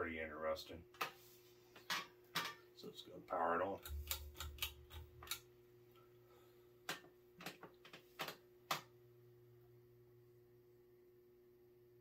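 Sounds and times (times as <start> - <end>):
faint steady hum: 0.0 - 12.0
ceiling fan switch clicks: 3.8 - 5.5.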